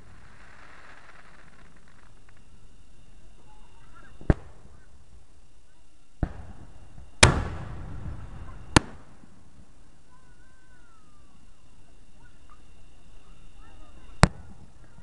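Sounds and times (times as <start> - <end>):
sharp crack: 7.2 - 7.8.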